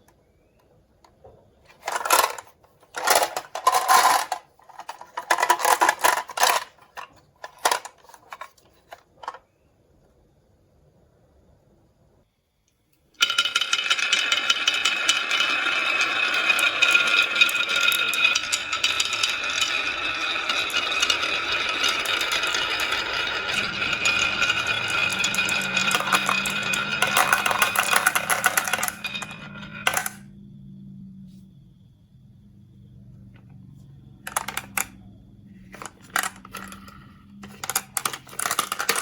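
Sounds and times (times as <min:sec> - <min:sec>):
marbles rolling down a track: 0:01.7 - 0:08.5, 0:13.2 - 0:30.4, 0:34.3 - 0:39.0
faint low hum: 0:18.0 - 0:39.0.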